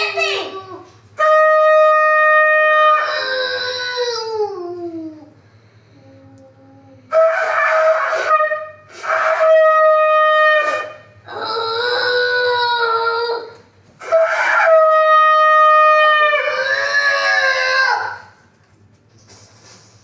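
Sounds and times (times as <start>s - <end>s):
shofar blasts: 1.2s - 3.4s, 7.1s - 11.3s, 14.0s - 18.4s.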